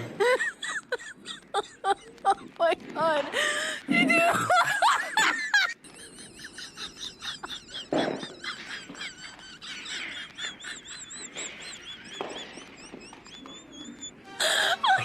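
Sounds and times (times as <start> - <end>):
high-pitched bird chirping: 11.1 - 15.0
rising and falling whistles: 11.4 - 14.9.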